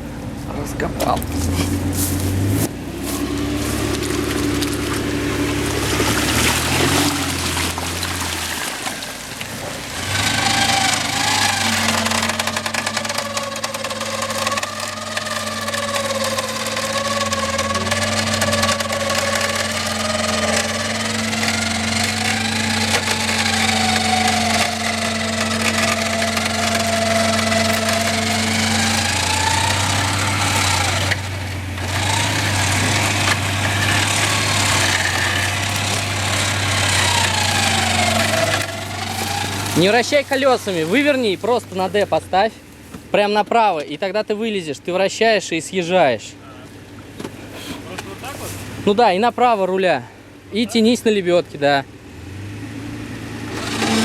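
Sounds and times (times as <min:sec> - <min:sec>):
car engine running: 0:00.0 - 0:54.0
wavering high whine: 0:09.2 - 0:42.2.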